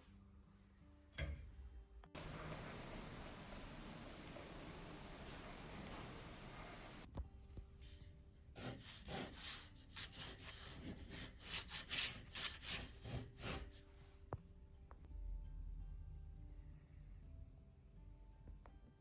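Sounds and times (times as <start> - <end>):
rubbing strokes across paper: 8.6 - 13.9.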